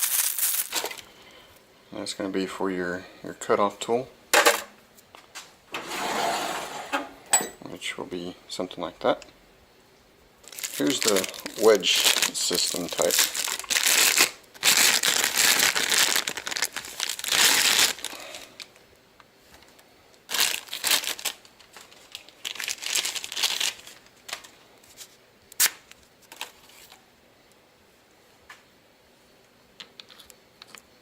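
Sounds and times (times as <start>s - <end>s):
packaging crinkling and rustling: 0.0s - 1.1s, 10.4s - 18.8s, 19.5s - 27.0s.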